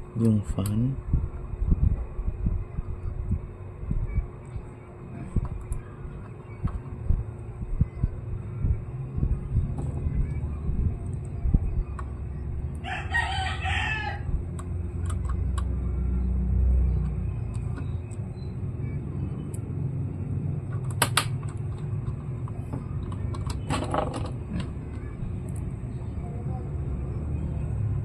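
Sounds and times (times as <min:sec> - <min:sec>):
low rumble: 0:00.0 - 0:20.5
rooster crowing: 0:12.8 - 0:14.4
small sharp clicks: 0:20.7 - 0:23.7.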